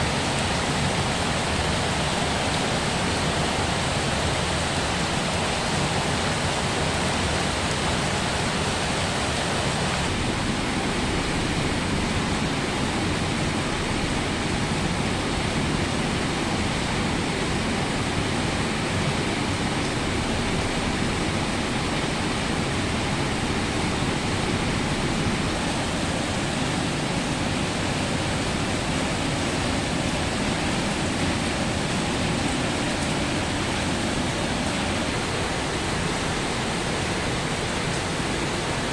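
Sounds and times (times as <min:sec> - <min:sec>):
heavy rain falling: 0:00.0 - 0:38.9.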